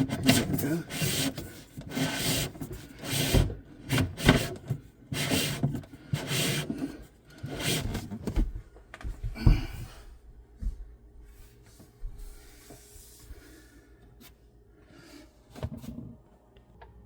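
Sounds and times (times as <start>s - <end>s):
pipe scraping against wood: 0.0s - 8.4s.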